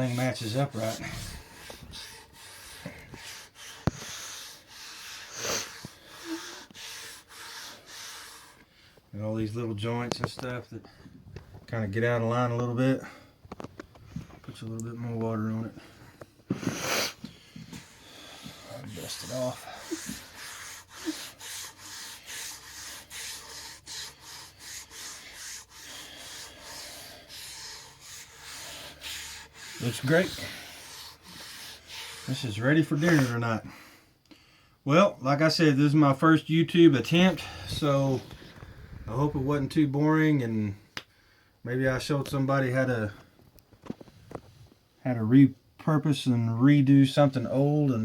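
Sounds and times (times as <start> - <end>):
hand rubbing wooden cutting board: 0.0 - 8.6, 17.6 - 33.4.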